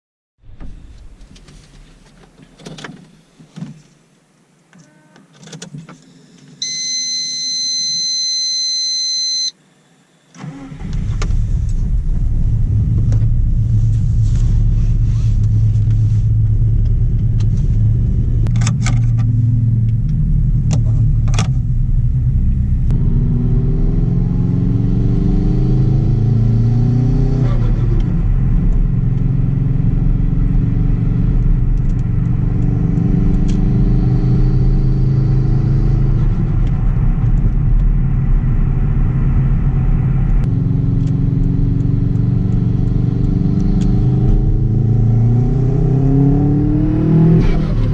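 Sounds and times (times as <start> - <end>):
steady electronic beep: 6.6 - 9.6
car engine starting and idling: 10.3 - 47.9.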